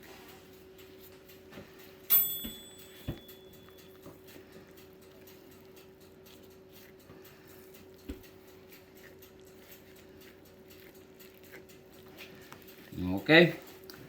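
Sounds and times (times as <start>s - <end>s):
sharp metallic clink: 2.1s - 3.6s.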